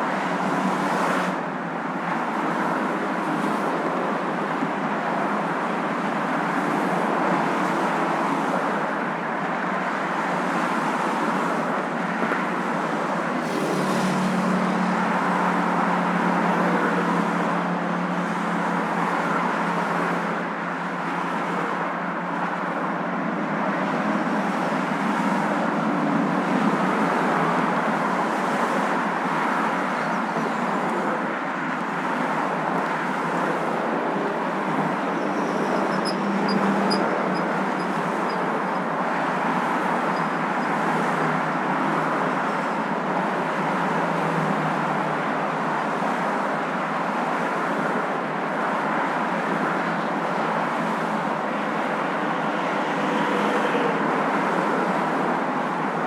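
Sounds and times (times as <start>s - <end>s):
car road and engine noise: 0.0s - 56.0s.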